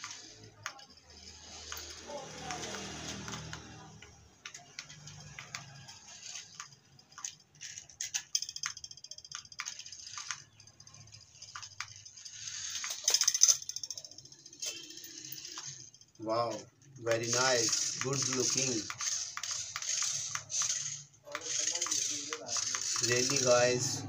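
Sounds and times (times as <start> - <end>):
sharp clicks: 0.0 - 14.8, 16.5 - 23.7
plastic gear and wheel rattle: 0.0 - 24.0
toy vehicle electric motors: 0.0 - 24.0.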